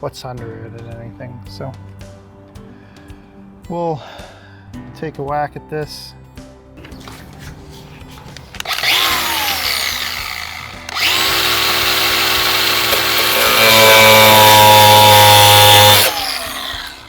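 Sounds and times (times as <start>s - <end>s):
power tool cutting metal wall: 8.6s - 17.0s.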